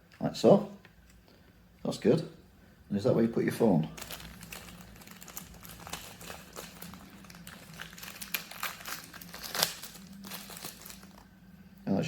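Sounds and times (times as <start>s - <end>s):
plastic packaging crinkling: 3.9s - 11.4s.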